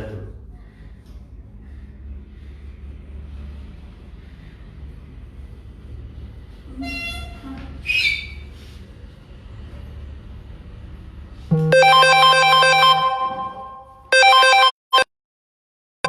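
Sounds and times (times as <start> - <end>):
low background hum: 0.0 - 14.1
electronic melody: 11.5 - 15.1.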